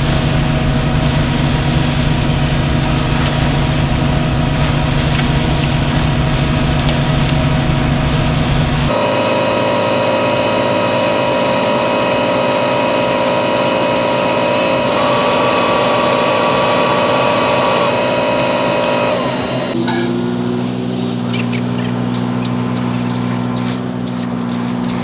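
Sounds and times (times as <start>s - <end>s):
motor running at high speed: 8.9s - 25.0s.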